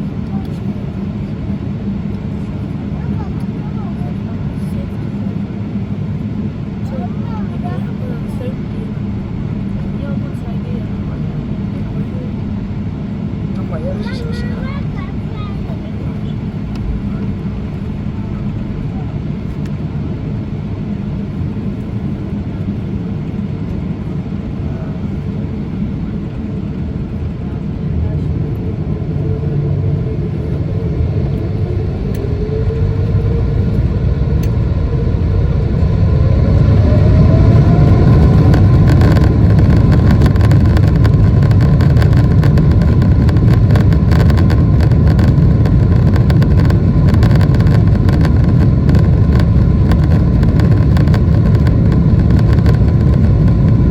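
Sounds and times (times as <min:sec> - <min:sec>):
jet engines spooling up: 0:13.6 - 0:53.9.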